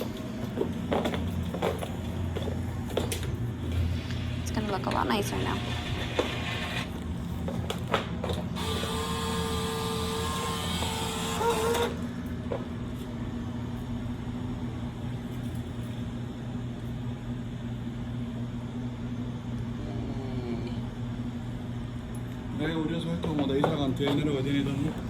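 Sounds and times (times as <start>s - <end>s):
vending machine motor whirring: 0.0s - 17.5s
steady low hum: 0.0s - 25.0s.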